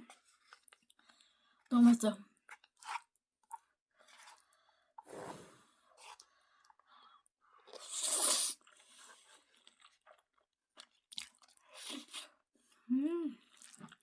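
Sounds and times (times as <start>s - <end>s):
person chewing noodles: 0.1s - 1.6s, 2.5s - 4.8s, 5.9s - 12.4s, 13.4s - 14.0s.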